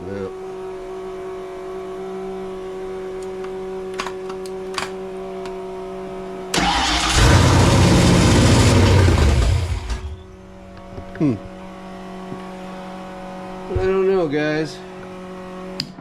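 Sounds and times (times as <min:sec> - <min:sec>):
car engine firing and running: 0:06.5 - 0:13.4.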